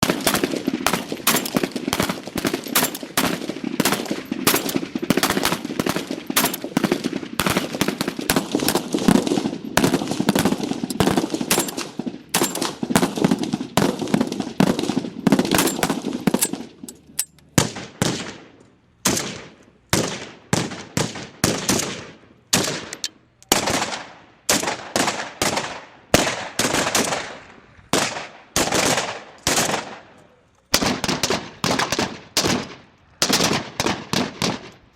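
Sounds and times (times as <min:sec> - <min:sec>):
rifle firing automatic bursts: 0:00.0 - 0:22.9.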